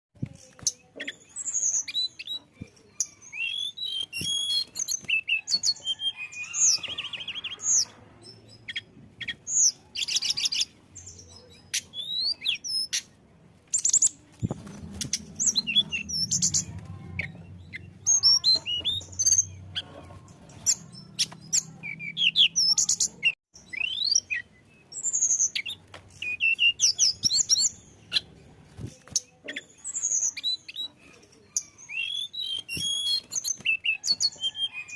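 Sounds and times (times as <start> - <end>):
bird singing chirps and whistles: 3.0 - 7.9, 11.7 - 13.0, 20.6 - 28.2, 31.6 - 34.9.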